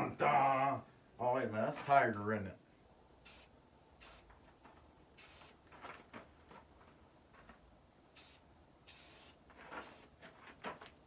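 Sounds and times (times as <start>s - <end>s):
aerosol spray can hissing: 3.3s - 4.3s, 5.2s - 5.6s, 8.2s - 10.1s.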